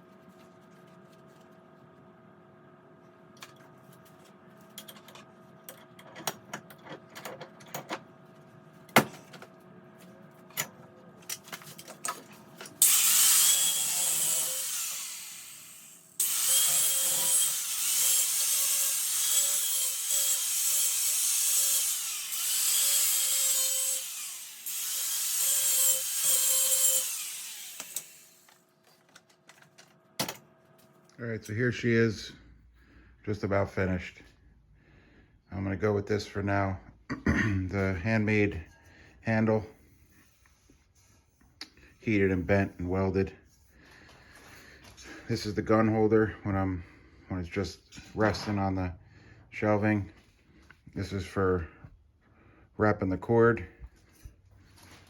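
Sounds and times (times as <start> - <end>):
angle grinder on steel: 12.8 - 28.5.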